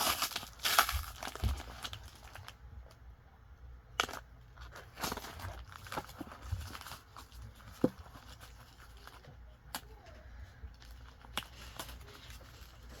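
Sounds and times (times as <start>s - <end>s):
packaging rustling: 0.0s - 2.6s, 4.0s - 9.3s.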